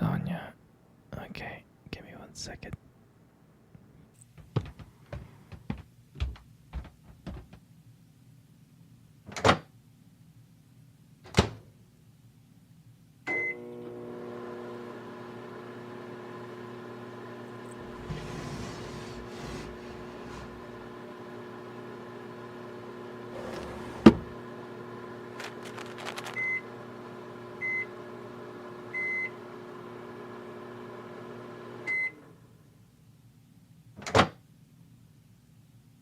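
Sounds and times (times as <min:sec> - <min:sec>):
microwave beep: 0:13.3 - 0:13.7, 0:26.3 - 0:26.7, 0:27.6 - 0:28.0, 0:28.9 - 0:29.4, 0:31.8 - 0:32.2
microwave humming: 0:13.3 - 0:32.5.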